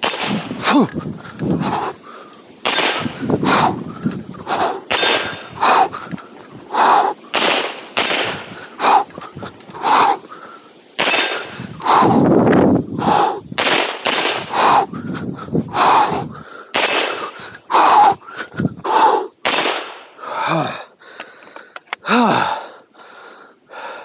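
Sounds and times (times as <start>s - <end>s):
handgun shots: 0.0s - 0.5s, 2.6s - 3.2s, 4.9s - 5.5s, 7.3s - 8.6s, 11.0s - 11.6s, 13.6s - 14.5s, 16.8s - 17.3s, 19.4s - 20.1s
thin high-pitched ring: 0.0s - 0.7s.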